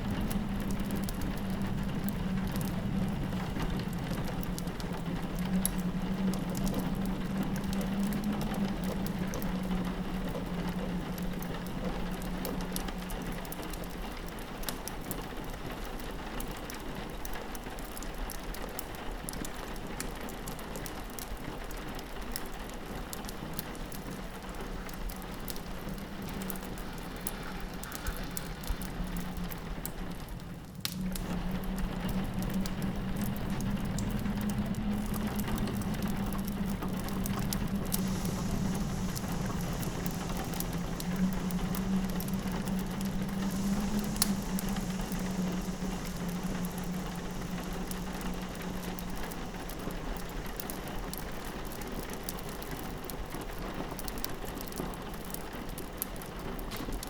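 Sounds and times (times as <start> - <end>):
low wind drone: 0.0 - 14.3, 23.5 - 53.2
rain pattering on a window: 0.0 - 57.0
wood fire crackling: 0.0 - 57.0.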